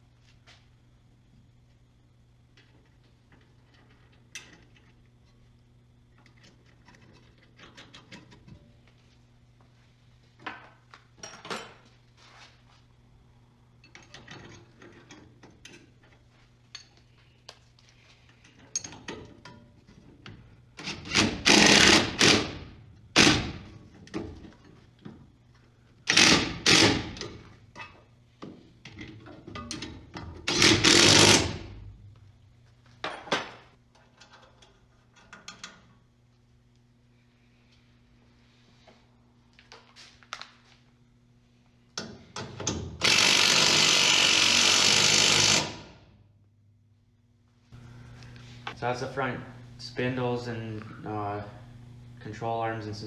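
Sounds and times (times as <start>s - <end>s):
faint steady hum: 0.0s - 53.0s
power tool bursts: 21.1s - 22.6s, 26.1s - 27.2s, 30.5s - 31.7s, 43.0s - 46.0s.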